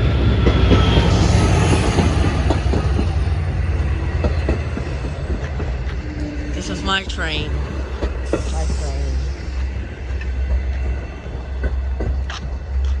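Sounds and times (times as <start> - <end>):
train rumbling past: 0.0 - 13.0
wheels clicking over rails: 0.3 - 13.0.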